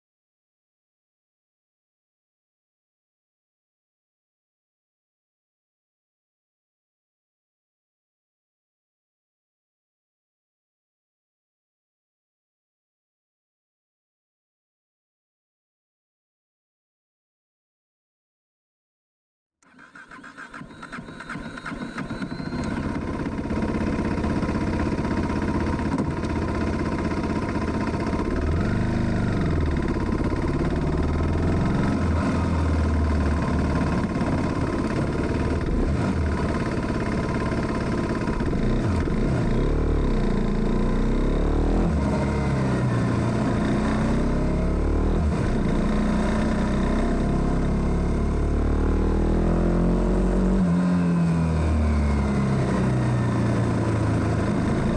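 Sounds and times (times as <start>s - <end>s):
motorcycle engine revving: 19.6s - 54.9s.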